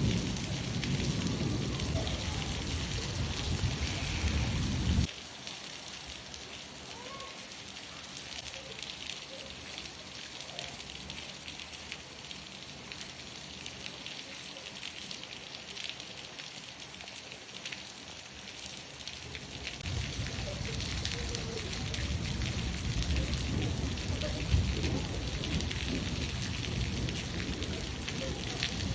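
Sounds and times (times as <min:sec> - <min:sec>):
thunder rumble: 0:00.0 - 0:05.1, 0:19.8 - 0:28.9
rain patter: 0:00.0 - 0:28.9.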